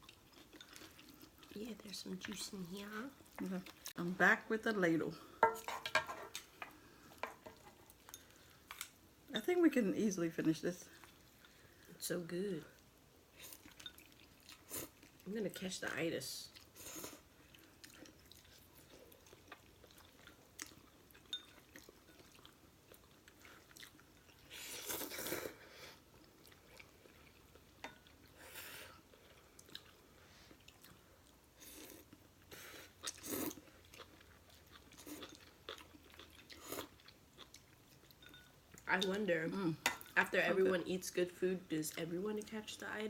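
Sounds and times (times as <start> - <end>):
chewing noodles: 0.0 - 2.4, 13.3 - 15.3, 16.5 - 38.9.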